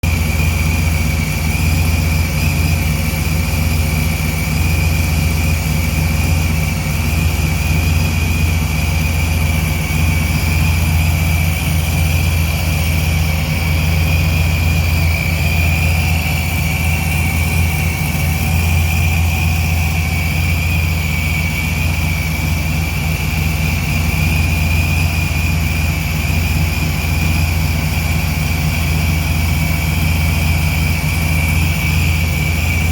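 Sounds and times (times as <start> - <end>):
engine idling: 0.0 - 32.9
high-pitched supercharger whine: 0.0 - 32.9.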